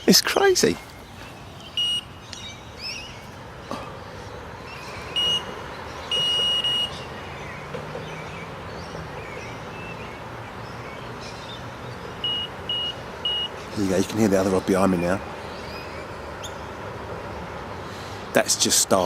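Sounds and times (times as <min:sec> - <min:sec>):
electronic bite alarm beeping: 0:01.8 - 0:02.1, 0:05.2 - 0:05.5, 0:06.1 - 0:07.0, 0:12.2 - 0:13.6.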